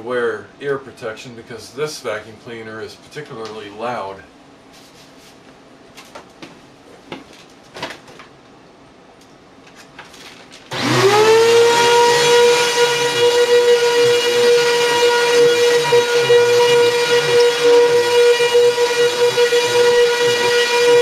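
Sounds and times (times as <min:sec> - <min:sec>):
vacuum cleaner whining: 0:10.7 - 0:21.0.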